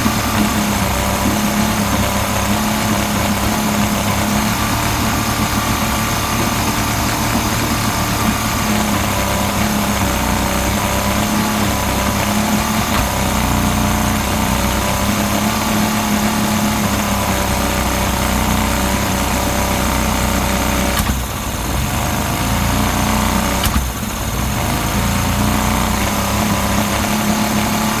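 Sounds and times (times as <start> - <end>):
engine idling with misfire: 0.0 - 28.0
sharp click: 20.9 - 21.2, 23.5 - 24.0.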